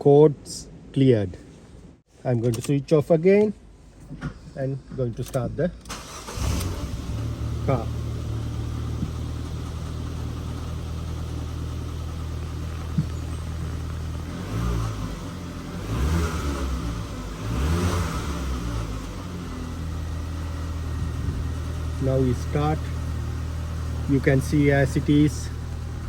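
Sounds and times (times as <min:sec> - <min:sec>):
car engine idling and revving: 0:05.9 - 0:26.0.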